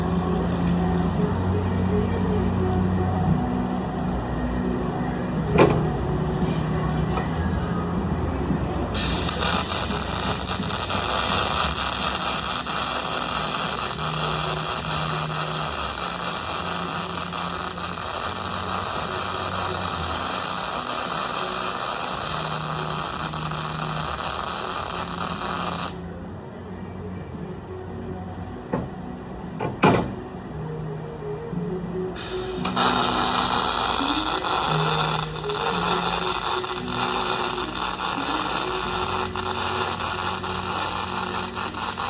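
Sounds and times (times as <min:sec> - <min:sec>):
low machine hum: 0:00.0 - 0:42.0
welder click: 0:09.0 - 0:26.0, 0:32.2 - 0:42.0
welding arc hissing: 0:09.0 - 0:26.0, 0:32.2 - 0:42.0.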